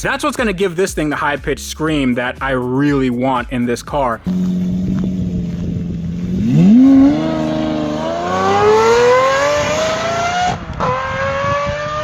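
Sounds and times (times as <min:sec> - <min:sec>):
car engine revving: 0:04.1 - 0:12.0.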